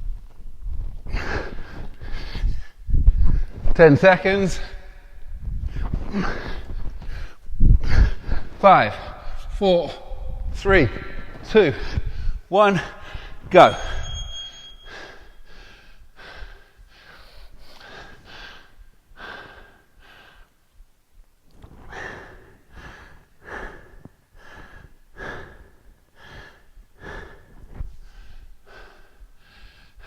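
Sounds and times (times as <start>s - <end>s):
man breathing hard: 1.1s - 3.6s, 5.2s - 9.5s, 11.2s - 12.4s, 14.8s - 20.5s, 21.8s - 30.0s.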